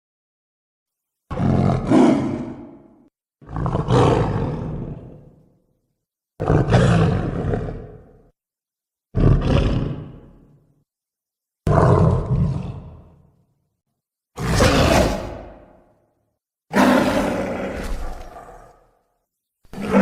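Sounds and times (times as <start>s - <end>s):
monster roars: 1.3s - 5.2s, 14.4s - 15.9s, 16.7s - 19.0s, 19.7s - 20.0s.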